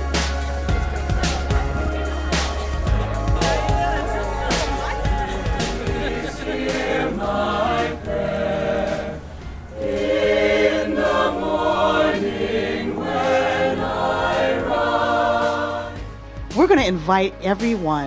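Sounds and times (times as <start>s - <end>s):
singers breathing: 0.0s - 12.8s
choir singing: 0.0s - 16.3s.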